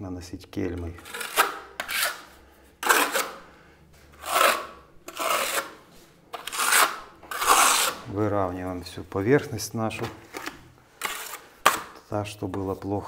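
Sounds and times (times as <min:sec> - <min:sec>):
trowel scraping plaster on wall: 0:00.8 - 0:03.5, 0:04.1 - 0:08.2, 0:10.4 - 0:12.7.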